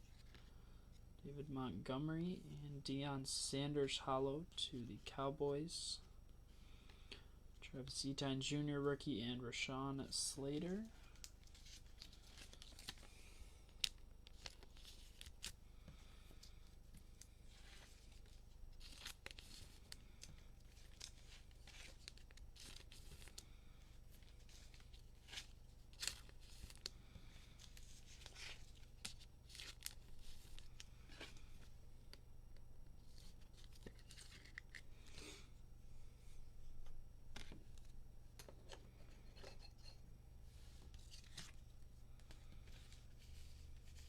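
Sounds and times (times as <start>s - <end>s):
rustling of cellophane wrappers: 10.9s - 15.6s, 17.2s - 31.7s.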